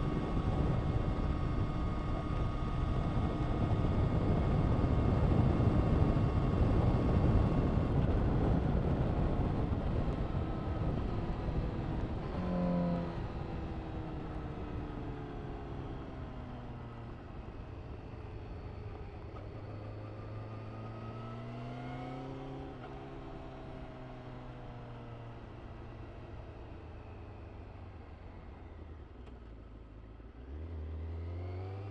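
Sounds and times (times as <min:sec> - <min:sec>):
motorcycle engine revving: 0:11.8 - 0:13.8.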